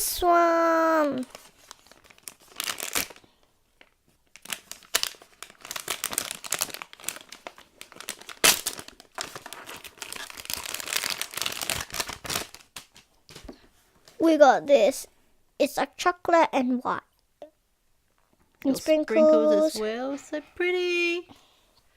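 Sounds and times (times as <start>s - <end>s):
plastic packaging tearing and crinkling: 1.0s - 3.2s, 3.8s - 13.4s.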